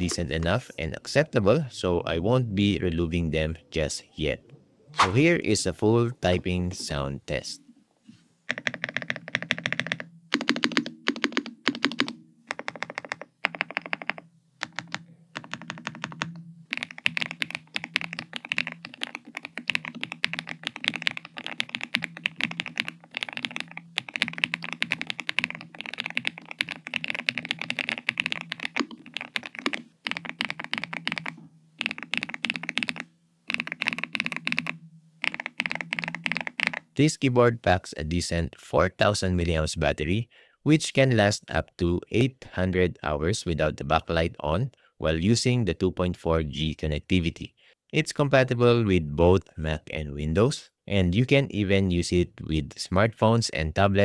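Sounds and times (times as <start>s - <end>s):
fast typing on mechanical keyboard: 8.5s - 37.0s.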